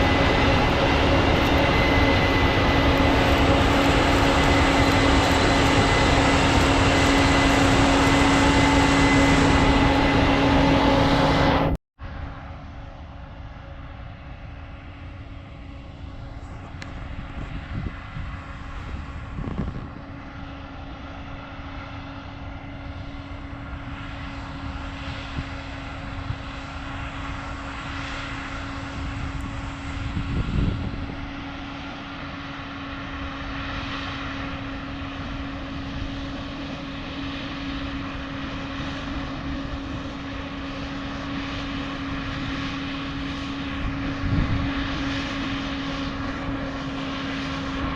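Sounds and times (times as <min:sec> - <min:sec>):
machine humming: 0:00.0 - 0:11.8
low rumble: 0:00.0 - 0:13.1.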